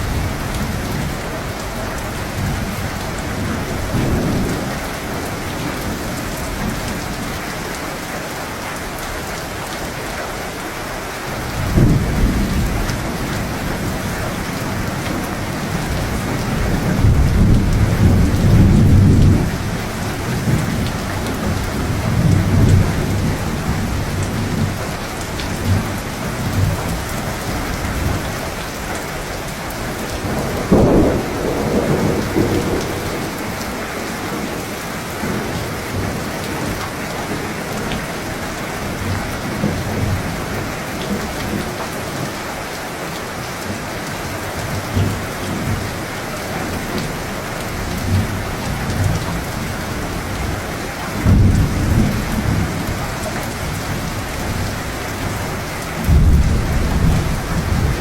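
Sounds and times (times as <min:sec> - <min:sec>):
heavy rain: 0:00.0 - 0:58.0
thunder rumbling: 0:11.6 - 0:28.9, 0:29.5 - 0:36.8, 0:47.7 - 0:58.0.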